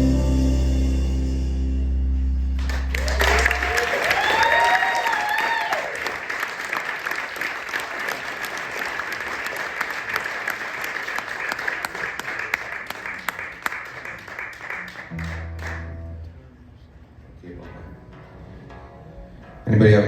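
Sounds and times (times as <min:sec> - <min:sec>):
low steady note: 0:00.0 - 0:03.0, 0:15.1 - 0:20.0
audience applauding: 0:02.6 - 0:16.0.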